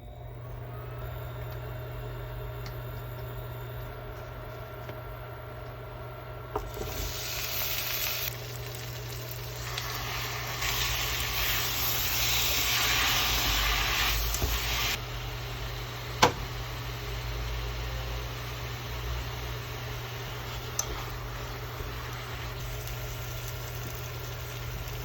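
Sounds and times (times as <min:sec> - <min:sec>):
food sizzling in a frying pan: 0:06.6 - 0:15.0, 0:20.6 - 0:25.0.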